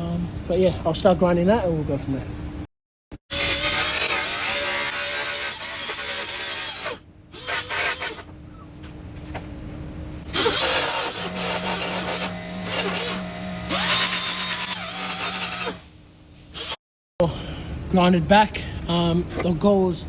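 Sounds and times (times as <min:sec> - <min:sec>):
power grinder grinding: 0:03.3 - 0:08.2, 0:10.3 - 0:15.8.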